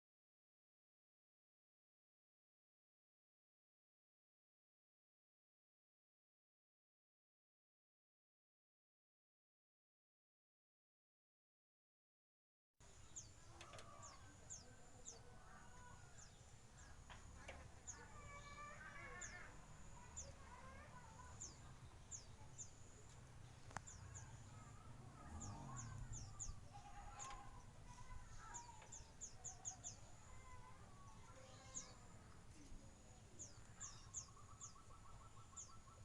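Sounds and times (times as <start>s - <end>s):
small birds chirping: 12.8s - 36.0s
lower bird calls: 13.0s - 22.8s, 23.6s - 32.0s, 33.3s - 36.0s.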